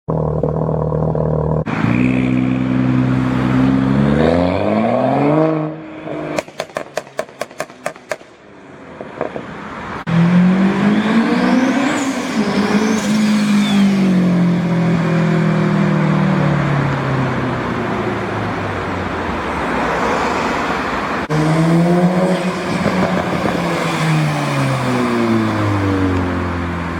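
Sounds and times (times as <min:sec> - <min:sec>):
exhaust pops and crackles: 0:06.4 - 0:08.3
car engine revving: 0:10.0 - 0:18.9, 0:21.1 - 0:26.9.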